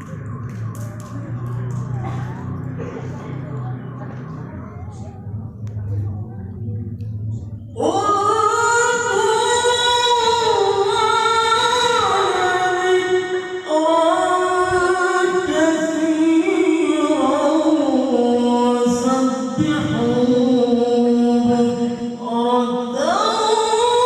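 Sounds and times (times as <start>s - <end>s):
man reciting melodically: 7.8s - 24.0s.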